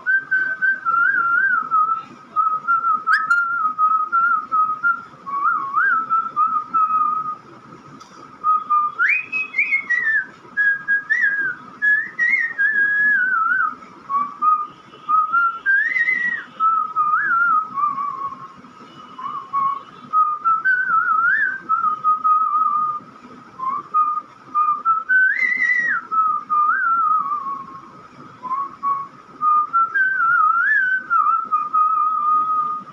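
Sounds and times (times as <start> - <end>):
person whistling a melody: 0.1 - 6.1.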